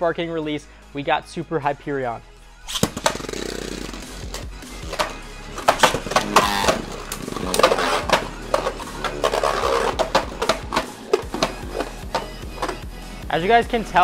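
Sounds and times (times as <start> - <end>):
scraping rattles: 2.8 - 13.1.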